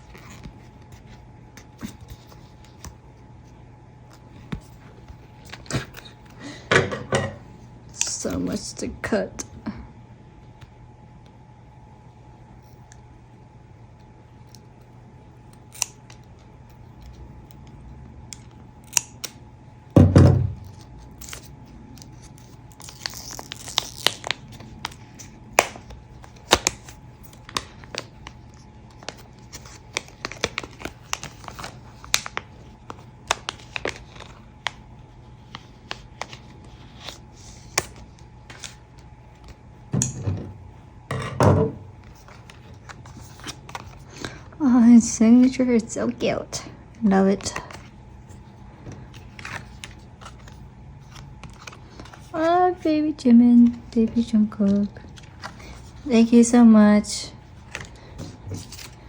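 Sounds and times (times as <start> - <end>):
package being cut and opened: 20.6 - 24.9
paper or plastic rustling: 47.4 - 52.8, 57.5 - 59.0.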